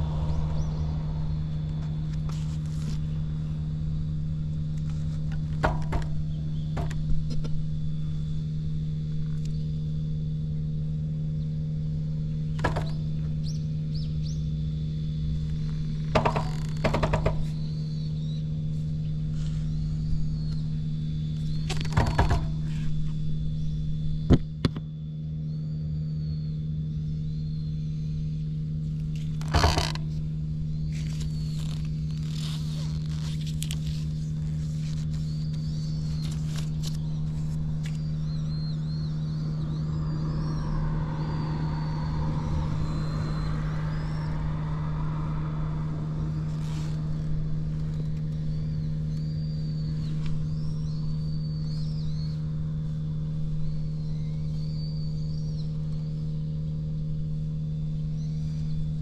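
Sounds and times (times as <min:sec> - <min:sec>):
motorcycle engine idling: 0:00.0 - 0:25.2
sharp knocks: 0:05.6 - 0:06.2, 0:06.8 - 0:07.4, 0:16.1 - 0:17.6.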